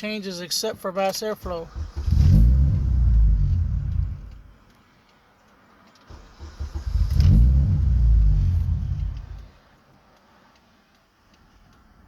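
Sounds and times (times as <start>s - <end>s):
car engine cranking: 1.4s - 4.6s, 6.0s - 9.5s.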